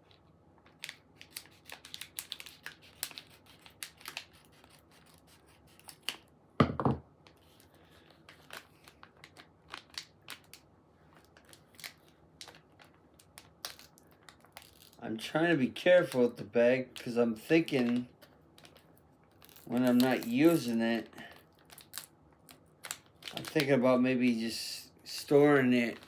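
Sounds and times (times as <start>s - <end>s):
plastic bag crinkling: 7.4s - 15.0s, 16.0s - 23.8s.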